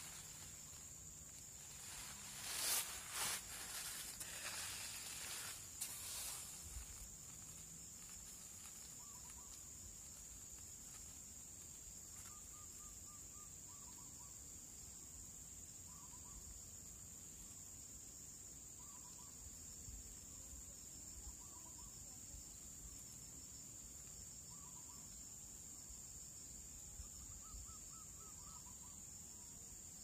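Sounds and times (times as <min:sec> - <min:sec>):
rustling: 0:00.0 - 0:11.3
high-pitched insect drone: 0:00.0 - 0:14.0.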